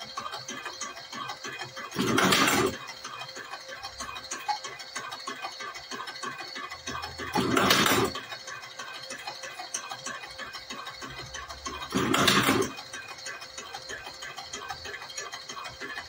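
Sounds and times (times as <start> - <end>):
mechanical ticking: 0.0 - 16.0.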